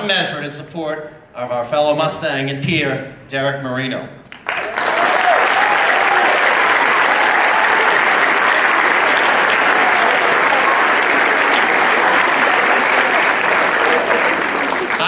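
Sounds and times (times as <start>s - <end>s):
crowd applauding: 4.3s - 15.0s
crowd cheering and whooping: 4.5s - 15.0s.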